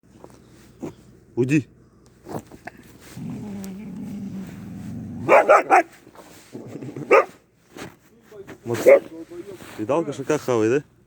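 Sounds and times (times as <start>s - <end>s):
puppy growling: 3.1s - 5.5s, 6.5s - 7.4s
puppy barking: 5.2s - 5.9s, 7.0s - 7.4s, 8.8s - 9.1s.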